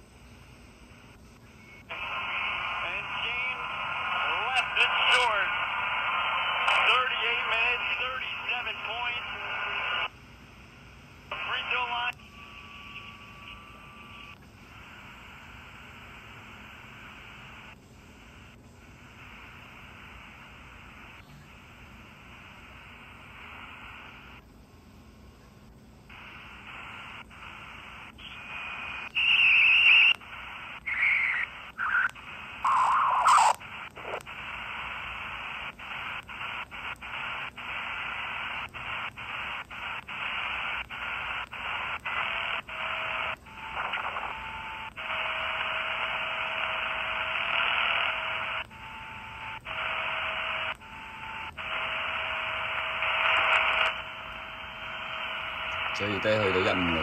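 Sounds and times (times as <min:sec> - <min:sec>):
radio static and hiss: 0:00.7 - 0:24.4, 0:25.1 - 0:57.0
squealing radio whistles: 0:28.2 - 0:33.6.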